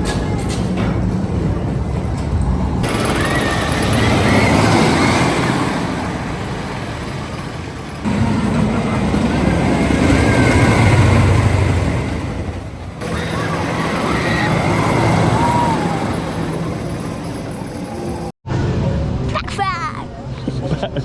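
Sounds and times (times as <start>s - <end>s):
roller coaster rumbling roar: 0.0s - 19.3s
high wavering cries: 2.9s - 6.0s, 13.0s - 18.3s.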